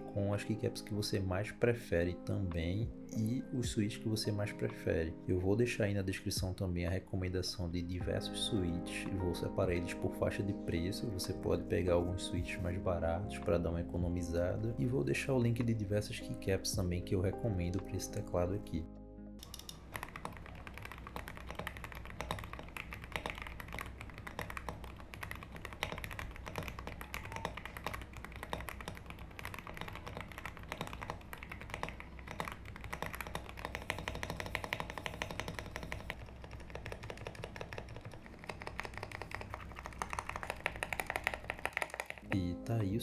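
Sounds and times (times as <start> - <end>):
fast typing on mechanical keyboard: 19.4 - 42.3.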